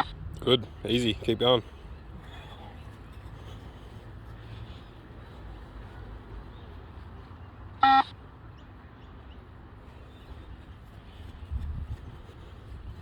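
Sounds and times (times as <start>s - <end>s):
short electronic beep: 7.8s - 8.1s.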